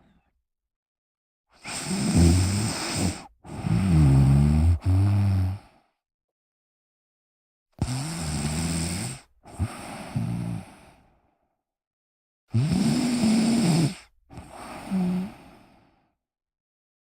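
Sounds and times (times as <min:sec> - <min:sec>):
person snoring: 0:01.6 - 0:05.8, 0:07.8 - 0:11.0, 0:12.5 - 0:15.9.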